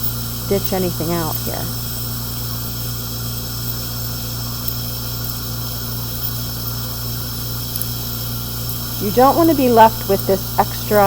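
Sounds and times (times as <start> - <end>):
even hiss: 0.0 - 11.0
low machine hum: 0.0 - 11.0
faint ticks: 7.7 - 7.9.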